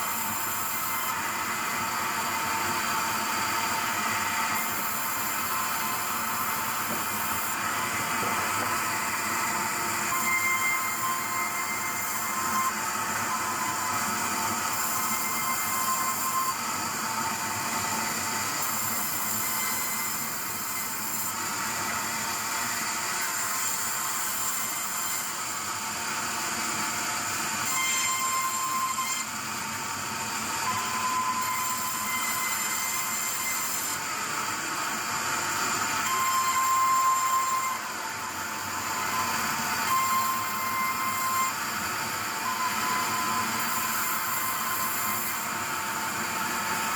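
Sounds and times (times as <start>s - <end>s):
sawmill saw cutting wood: 0.0s - 46.9s
high squealing saw tone: 4.1s - 16.7s, 18.5s - 21.4s, 27.6s - 29.4s, 30.4s - 34.1s, 35.6s - 45.6s.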